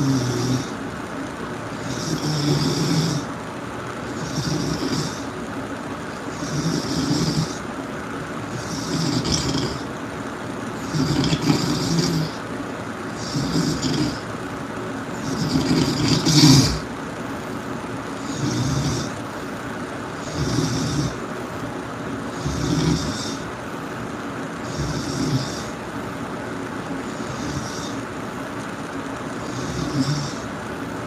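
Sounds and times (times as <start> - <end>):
person snoring loudly: 0.0 - 0.8, 1.8 - 3.4, 4.0 - 5.4, 6.1 - 7.7, 8.4 - 10.0, 10.8 - 12.5, 13.1 - 14.3, 15.1 - 17.0, 18.1 - 19.3, 20.2 - 21.3, 22.3 - 23.5, 24.6 - 25.8, 27.0 - 28.1, 29.4 - 30.5.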